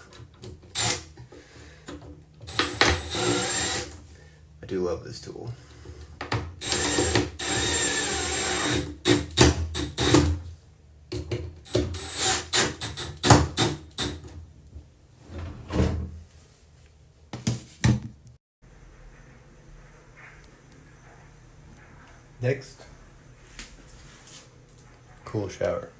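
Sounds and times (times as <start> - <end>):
power drill whining: 0.7 - 1.1, 2.5 - 4.0, 6.6 - 10.4, 11.7 - 14.2.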